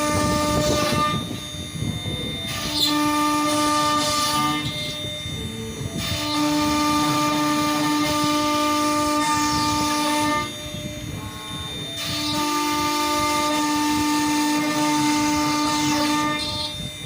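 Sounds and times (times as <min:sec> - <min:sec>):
cnc router cutting wood: 0:00.0 - 0:17.0.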